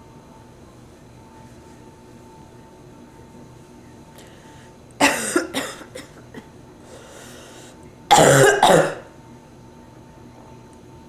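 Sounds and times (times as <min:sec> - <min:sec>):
woman coughing harshly: 0:05.0 - 0:06.5, 0:08.1 - 0:09.1.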